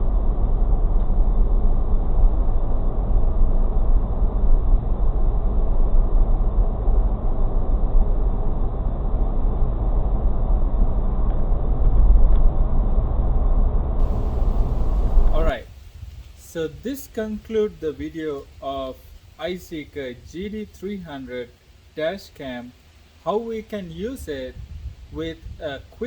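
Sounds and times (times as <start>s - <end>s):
car cabin road and engine rumble: 14.0s - 15.8s.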